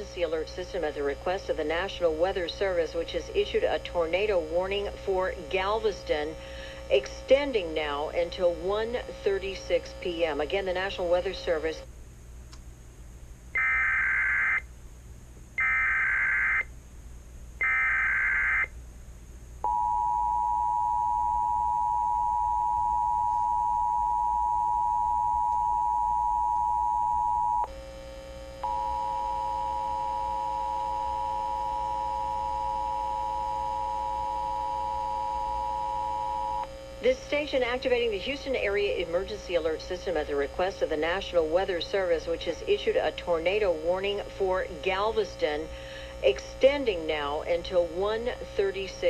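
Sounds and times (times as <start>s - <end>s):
low hum: 0.0s - 40.3s
shrill data bursts: 13.6s - 14.6s, 15.6s - 16.7s, 17.6s - 18.7s
two-tone attention signal: 28.6s - 36.6s.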